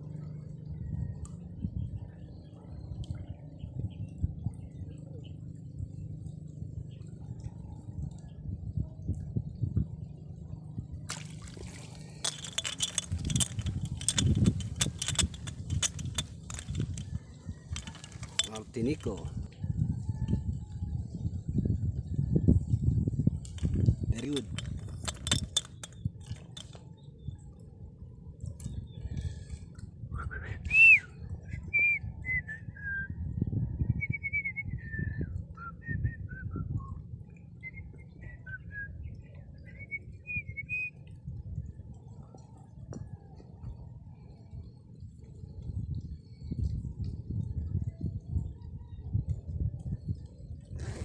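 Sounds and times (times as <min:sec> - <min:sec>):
low rumble of handling noise: 0:00.0 - 0:51.0
sharp clicks and rattles: 0:12.1 - 0:19.5, 0:23.4 - 0:26.8
person whistling a tune: 0:30.2 - 0:31.1.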